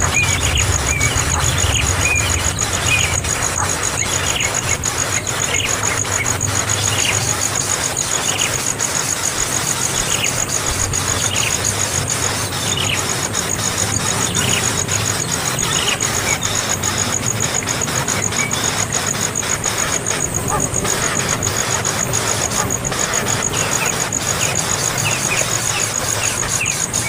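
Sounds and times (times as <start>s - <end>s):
bird chirping: 0.0s - 27.0s
loud steady hiss: 0.0s - 27.0s
pulsing high-pitched tone: 0.0s - 27.0s.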